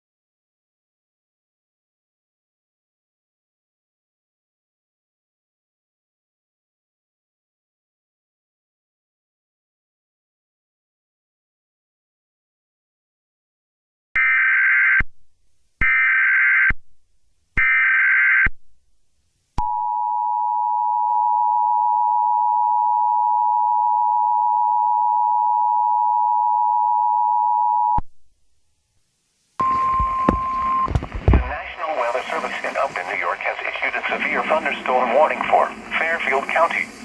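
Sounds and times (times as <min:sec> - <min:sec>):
two-tone attention signal: 0:29.6 - 0:31.8
hissy weather-radio alert tone: 0:29.6 - 0:37.0.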